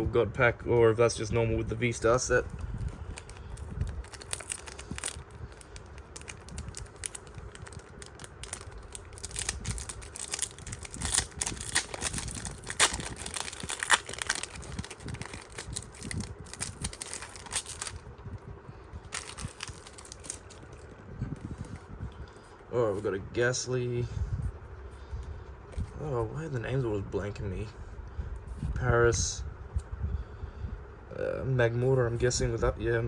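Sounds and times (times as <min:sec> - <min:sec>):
wrapper crinkling and tearing: 0:02.6 - 0:18.1, 0:19.0 - 0:20.9.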